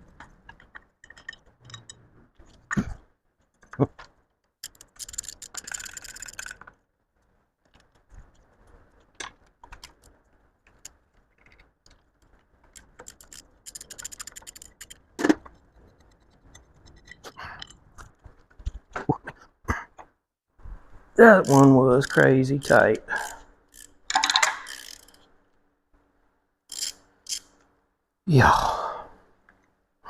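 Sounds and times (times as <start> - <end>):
tool clinks and scrapes: 0.5 - 2.8, 12.7 - 18.2
rapid metallic ratchet clicking: 4.6 - 6.6, 12.8 - 15.0, 21.3 - 25.3, 26.7 - 27.6.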